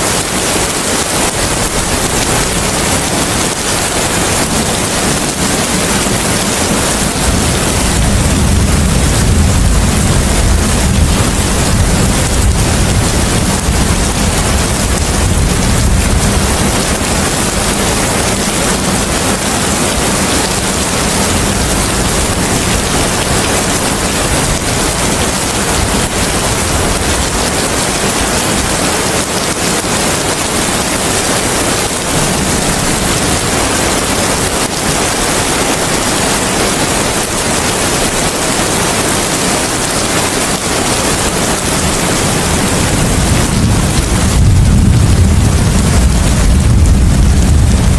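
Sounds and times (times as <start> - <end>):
heavy rain: 0.0 - 47.9
wind: 0.0 - 47.9
deep low rumble: 43.1 - 47.9.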